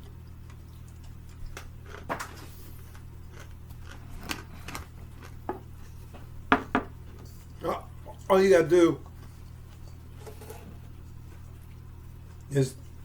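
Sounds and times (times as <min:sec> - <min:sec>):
steady low hum: 0:00.0 - 0:13.0
nuts crunching: 0:01.3 - 0:05.5.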